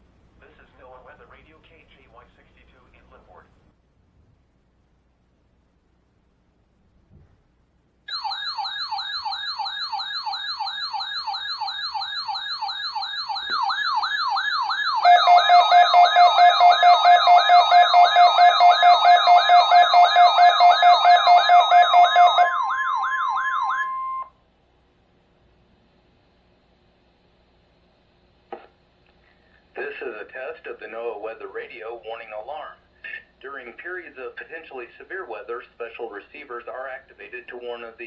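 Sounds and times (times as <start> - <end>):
rising whoop siren alarm: 8.1 - 24.3
steady warning alarm tone: 8.1 - 24.3.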